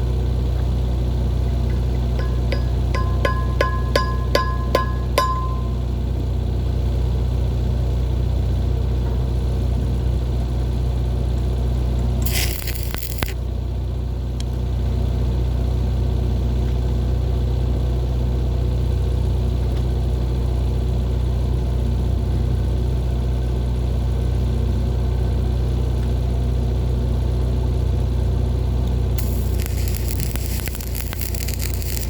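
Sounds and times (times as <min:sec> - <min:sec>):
engine running steadily: 0:00.0 - 0:32.0.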